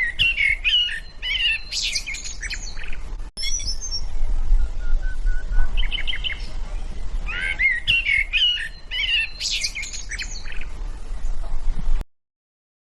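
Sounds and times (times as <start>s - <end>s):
songbird singing: 0.0s - 12.0s
steady low rumble: 2.7s - 8.9s, 9.8s - 12.0s.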